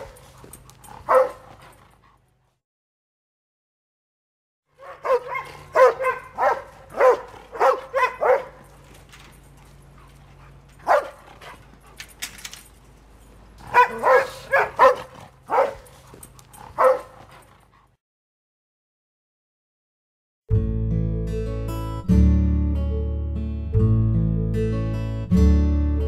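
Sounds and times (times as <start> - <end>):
dog barking: 1.0 - 1.7, 4.8 - 8.7, 10.8 - 11.6, 13.6 - 16.0, 16.6 - 17.4.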